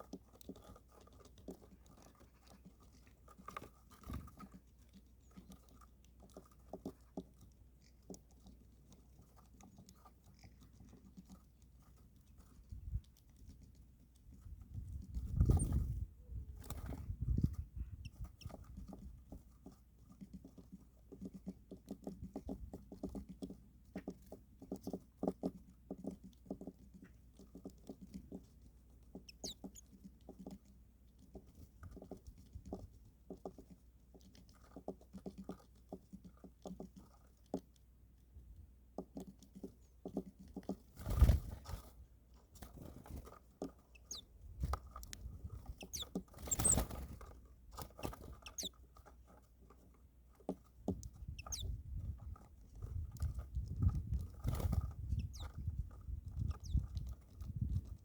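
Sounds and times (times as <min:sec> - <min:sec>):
birds scuffling: 0:00.0 - 0:58.0
beaks tapping on hard surface: 0:29.1 - 0:30.6, 0:43.6 - 0:47.0, 0:47.8 - 0:48.8, 0:50.5 - 0:51.8, 0:54.5 - 0:55.6, 0:56.3 - 0:57.2.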